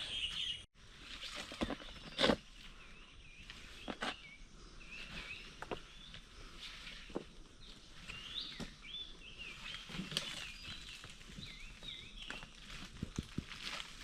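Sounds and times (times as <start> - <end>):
small birds chirping: 0.0 - 0.7, 1.6 - 13.8
footsteps on forest trail: 3.4 - 14.0.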